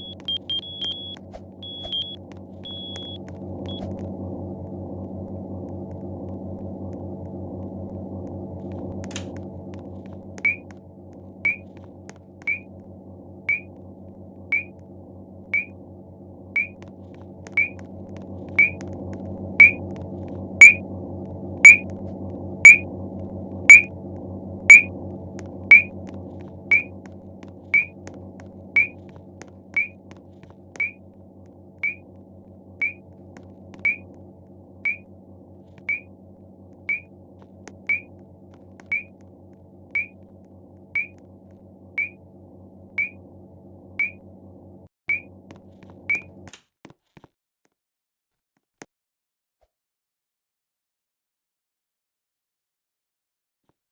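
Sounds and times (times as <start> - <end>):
fire alarm beeping: 0.0 - 3.9, 10.4 - 10.6, 14.5 - 14.7, 18.6 - 18.8, 19.6 - 19.8, 24.7 - 24.9, 25.7 - 25.9, 26.7 - 26.9, 28.8 - 29.0, 33.8 - 34.0, 38.9 - 39.1
steady low hum: 0.0 - 46.5.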